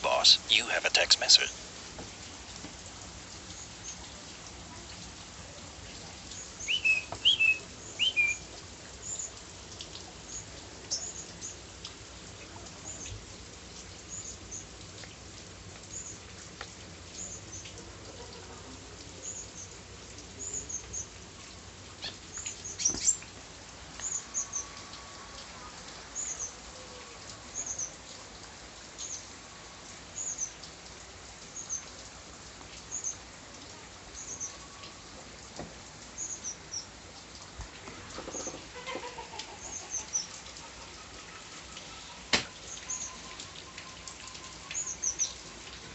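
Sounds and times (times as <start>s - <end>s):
rain hissing: 0.0s - 17.6s.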